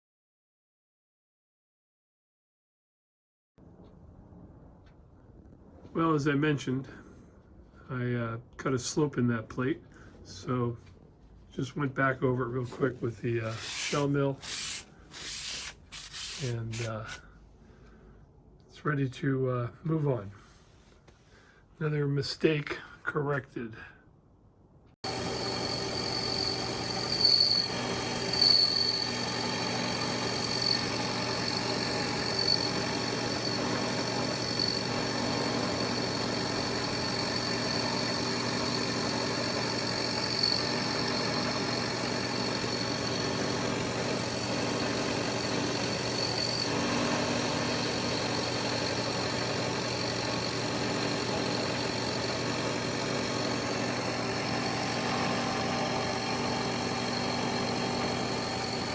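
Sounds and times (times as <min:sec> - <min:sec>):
milling machine running: 0:13.5 - 0:16.9, 0:25.0 - 0:58.9.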